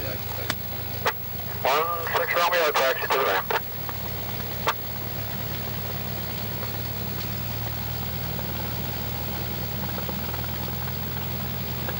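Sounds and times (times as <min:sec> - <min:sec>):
plane engine idling: 0:00.0 - 0:11.9.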